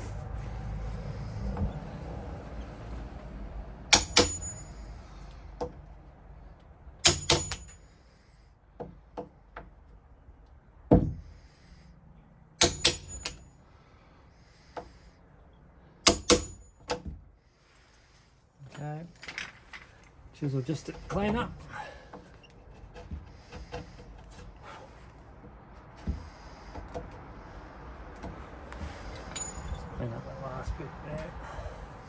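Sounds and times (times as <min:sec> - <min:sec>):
hammer striking metal punch: 0:03.9 - 0:04.6, 0:07.0 - 0:07.8, 0:12.6 - 0:13.4, 0:16.0 - 0:17.0.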